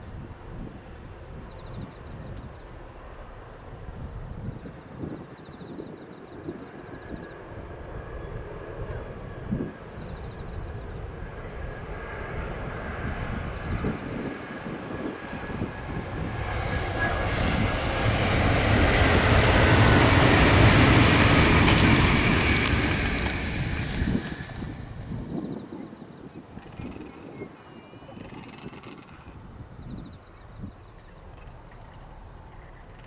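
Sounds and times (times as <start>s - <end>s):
high-speed train passing: 0.2s - 26.3s.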